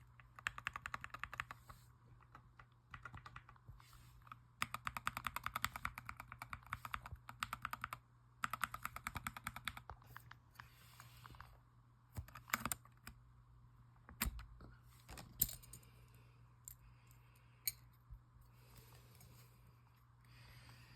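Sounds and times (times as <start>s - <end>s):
mechanical keyboard typing: 0.2s - 1.6s, 2.3s - 3.6s, 4.6s - 9.9s, 12.2s - 13.1s
low steady hum: 5.6s - 20.9s.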